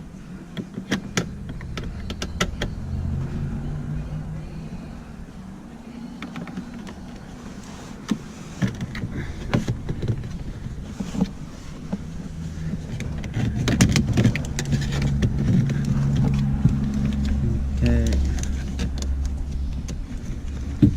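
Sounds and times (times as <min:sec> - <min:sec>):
low hum: 0:00.0 - 0:20.9.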